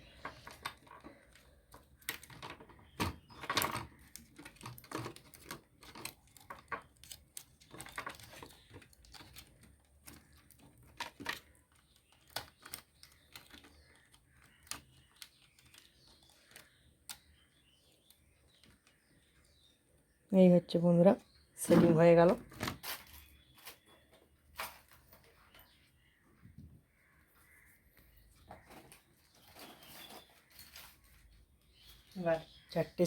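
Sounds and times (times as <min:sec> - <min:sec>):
small parts clicking and knocking: 0:00.0 - 0:19.6.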